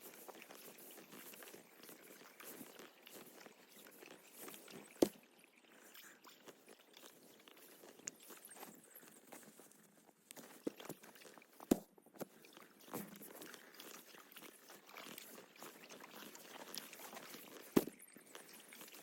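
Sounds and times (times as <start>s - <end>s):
kayak paddle splashing: 10.6s - 19.0s.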